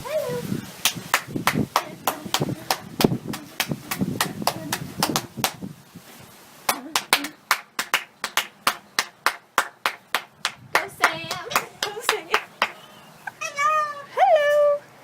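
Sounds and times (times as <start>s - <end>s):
hand clapping: 0.8s - 5.6s, 6.7s - 12.8s.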